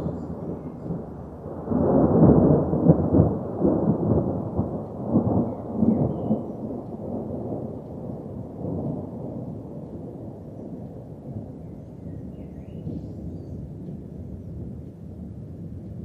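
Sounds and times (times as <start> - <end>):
thunder rolling: 0.0 - 11.7.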